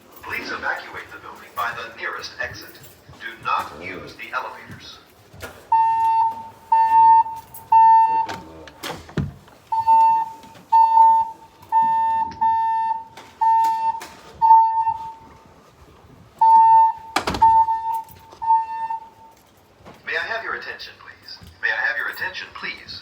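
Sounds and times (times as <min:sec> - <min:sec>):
fire alarm beeping: 0:05.6 - 0:08.9, 0:09.6 - 0:15.6, 0:16.4 - 0:19.6.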